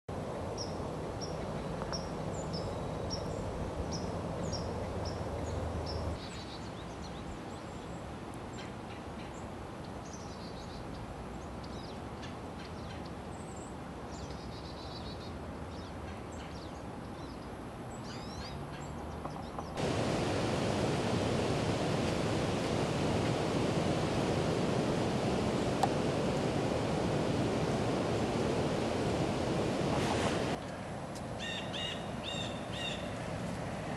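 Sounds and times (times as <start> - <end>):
steady background hiss: 19.7 - 33.9
bird high chirp: 31.4 - 33.1
bird calls: 31.4 - 33.2.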